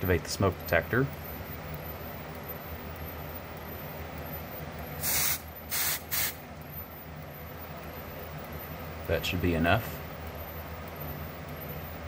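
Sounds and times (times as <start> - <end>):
aerosol spray hissing: 5.0 - 6.4.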